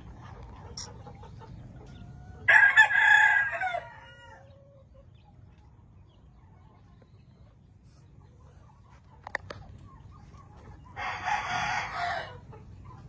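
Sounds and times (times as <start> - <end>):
rooster crowing: 2.5 - 4.5, 11.0 - 12.4.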